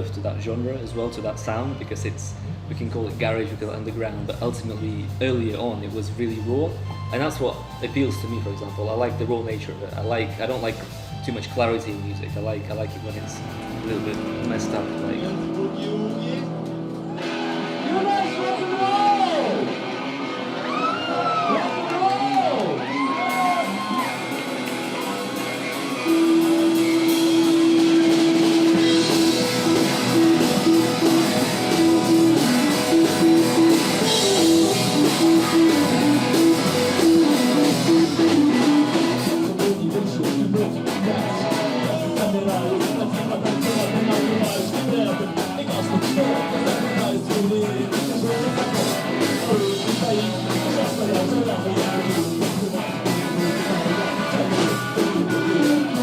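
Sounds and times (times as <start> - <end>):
drum kit: 0.0 - 56.0
rock music: 0.0 - 56.0
electric guitar riff: 12.8 - 56.0.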